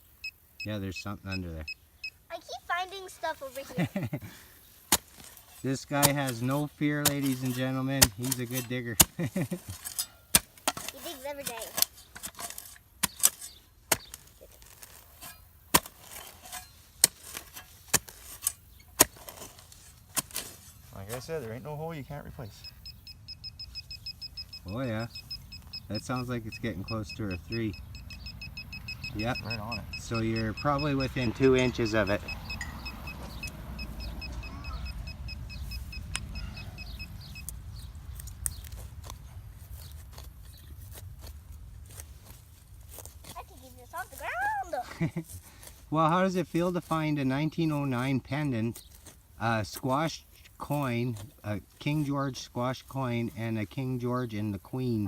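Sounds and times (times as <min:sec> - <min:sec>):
digging tool chopping ground: 0:04.8 - 0:21.4
faint scraping: 0:09.6 - 0:22.6
metal detector beeping rapidly: 0:22.4 - 0:37.5.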